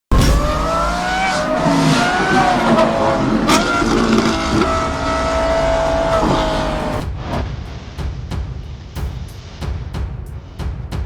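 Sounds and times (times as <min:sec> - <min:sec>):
car engine revving hard: 0:00.1 - 0:07.0
sharp exhaust crack: 0:00.1 - 0:07.5.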